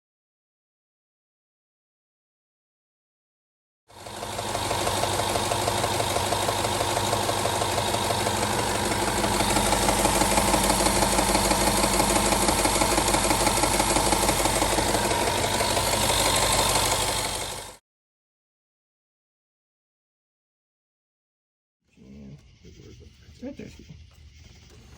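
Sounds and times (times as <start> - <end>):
car engine idling with rattle: 4.0 - 17.8.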